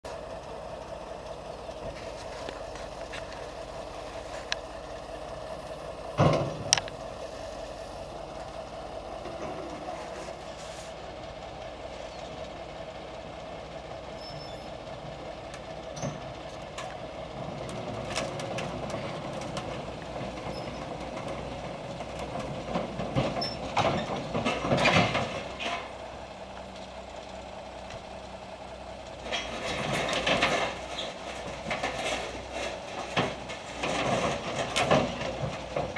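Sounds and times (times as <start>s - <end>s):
excavator engine hum: 0.0s - 35.9s
metal clanking and rattling: 6.1s - 7.0s, 15.9s - 26.0s, 29.2s - 35.9s.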